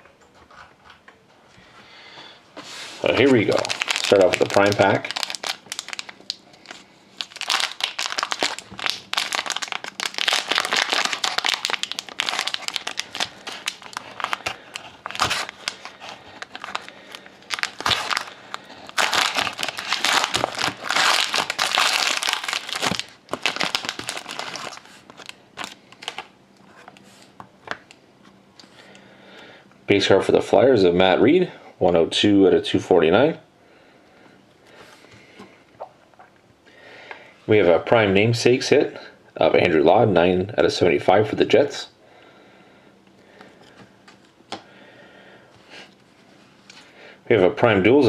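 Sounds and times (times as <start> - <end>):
crinkling and crackling: 3.0 - 28.0
card pack wrapper tearing: 3.1 - 26.3.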